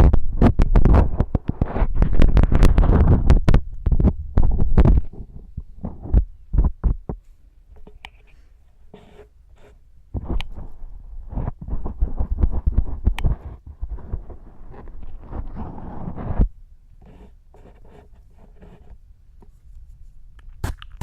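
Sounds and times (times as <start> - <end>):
scratching and crackling: 0.0 - 21.0.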